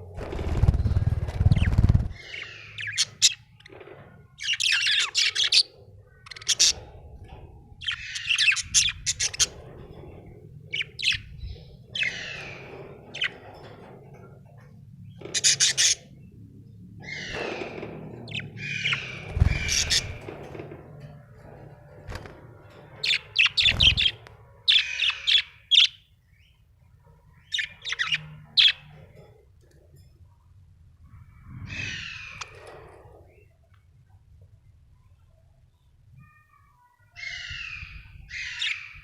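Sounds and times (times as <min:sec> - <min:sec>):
budgerigar chirping and chattering: 0:15.2 - 0:16.1, 0:23.1 - 0:26.1.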